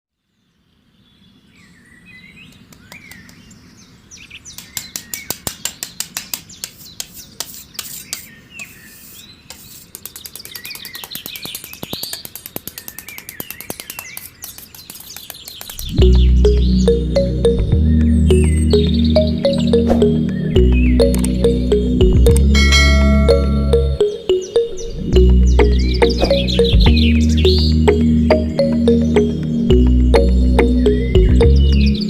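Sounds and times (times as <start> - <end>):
small birds chirping: 0.4 - 32.0
sharp clicks: 10.0 - 15.9, 21.0 - 21.5, 22.3 - 22.5
music: 15.8 - 32.0.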